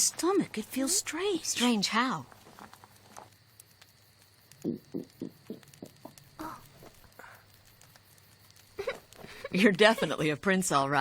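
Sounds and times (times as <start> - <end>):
stomach growling: 2.2 - 9.6.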